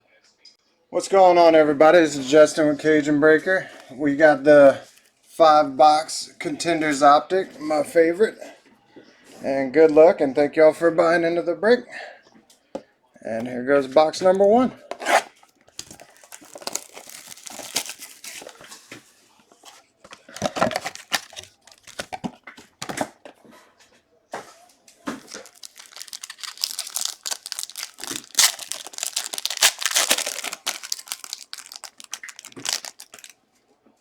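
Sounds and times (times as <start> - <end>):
plastic wrapping tearing and crinkling: 15.0 - 18.8, 20.2 - 22.2, 25.1 - 33.4.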